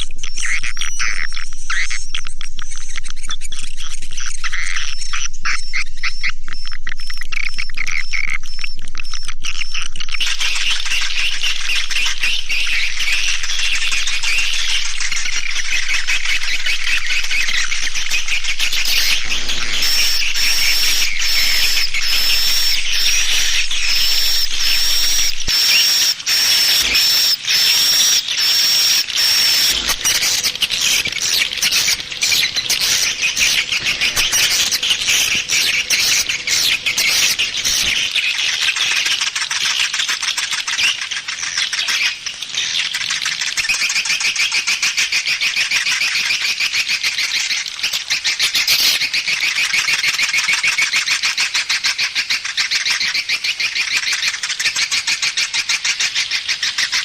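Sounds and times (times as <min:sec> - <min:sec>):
repeated high chirp: 0:00.0 - 0:38.4
swiftlets twittering and clicking: 0:00.0 - 0:57.0.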